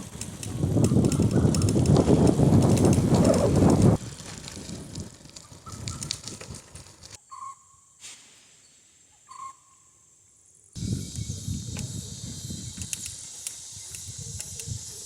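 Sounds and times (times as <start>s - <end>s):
wind and riding noise: 0.0s - 7.2s, 10.8s - 15.0s
bird calling: 5.4s - 6.2s, 7.2s - 7.9s, 9.1s - 10.0s.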